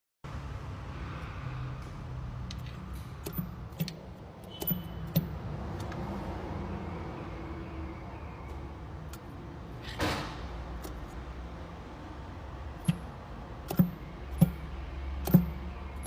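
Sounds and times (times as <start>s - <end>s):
sharp clicks or knocks: 2.4s - 6.0s, 12.8s - 15.7s.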